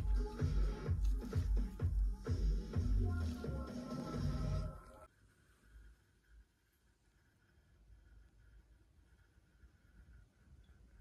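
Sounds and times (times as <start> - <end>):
electronic dance music: 0.0 - 5.1.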